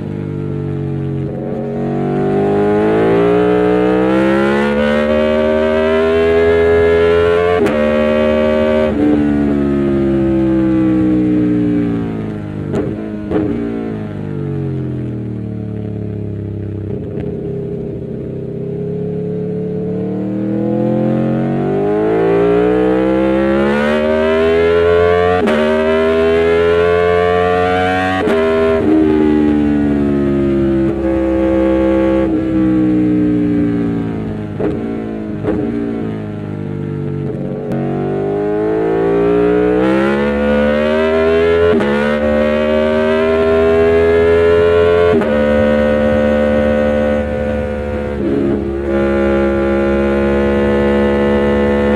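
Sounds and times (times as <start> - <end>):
motorcycle engine accelerating: 0.0 - 51.9
gear upshift: 44.8 - 51.9.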